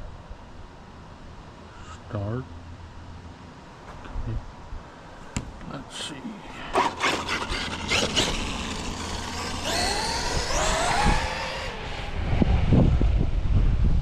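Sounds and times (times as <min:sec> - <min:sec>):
electric motor whining: 0:06.7 - 0:12.6
wind buffeting microphone: 0:07.5 - 0:14.0.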